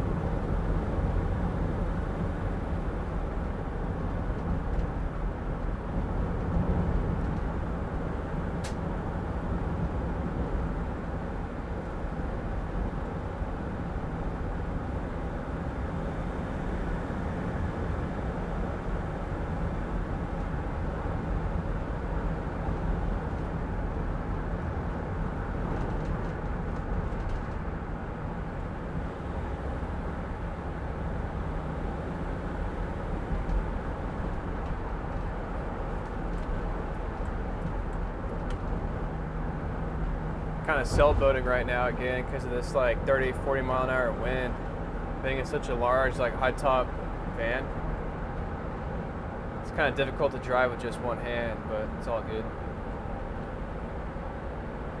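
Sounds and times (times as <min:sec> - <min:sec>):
van engine and road rumble: 0:00.0 - 0:55.0
wind against van body: 0:32.9 - 0:42.4.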